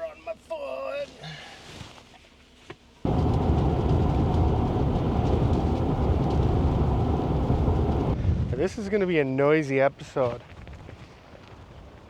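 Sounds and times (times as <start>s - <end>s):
wind buffeting microphone: 3.1s - 8.6s.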